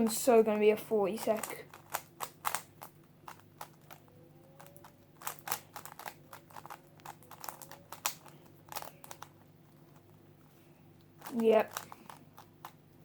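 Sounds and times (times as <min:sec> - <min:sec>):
speed cube plastic clicks: 0:01.2 - 0:09.4, 0:11.2 - 0:12.8.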